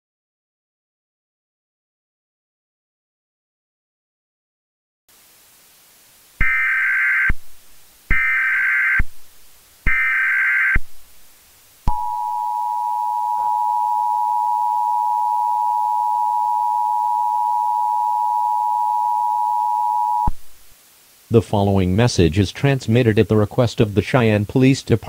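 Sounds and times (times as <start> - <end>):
steady two-tone attention signal: 11.9 - 20.3.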